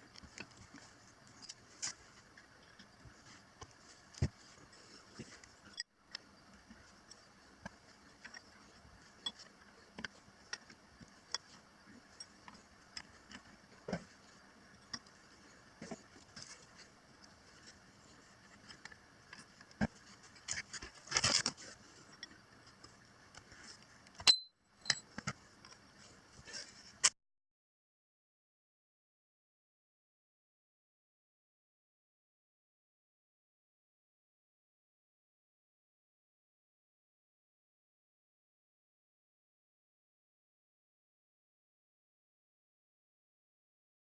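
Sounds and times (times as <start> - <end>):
scrape: 26.4 - 27.1.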